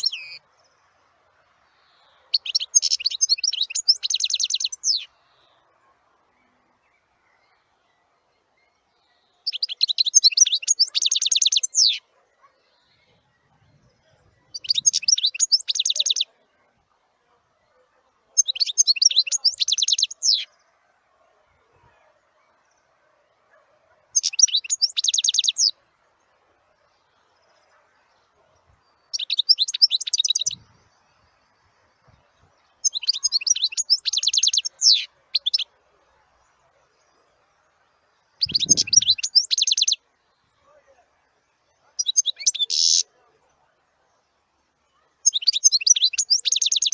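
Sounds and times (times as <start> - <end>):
songbird trilling: 0.0 - 0.4, 2.3 - 5.1, 9.5 - 12.0, 14.5 - 16.3, 18.4 - 20.5, 24.2 - 25.7, 29.1 - 30.6, 32.8 - 35.6, 38.4 - 40.0, 42.0 - 43.1, 45.2 - 46.9.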